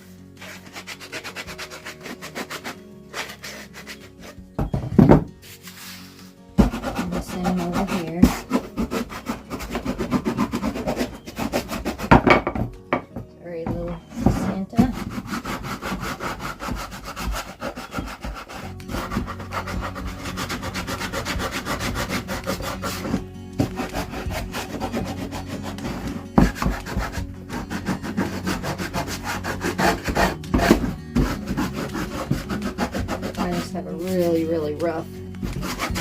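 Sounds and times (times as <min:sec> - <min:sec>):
sandpaper rubbing on wood: 0:00.0 - 0:04.4, 0:05.4 - 0:12.2, 0:14.1 - 0:36.0.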